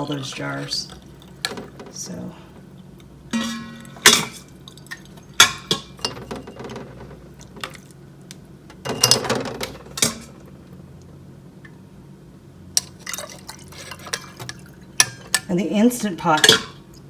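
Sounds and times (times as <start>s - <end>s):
broth being ladled: 0.0s - 2.7s, 3.3s - 8.0s, 12.8s - 15.4s
glass jars clinking: 3.4s - 7.1s, 8.9s - 10.4s, 16.3s - 16.8s
metal utensils clinking: 3.4s - 7.8s, 8.9s - 10.4s, 12.8s - 16.8s
utensil clatter: 3.4s - 7.8s, 8.8s - 10.5s.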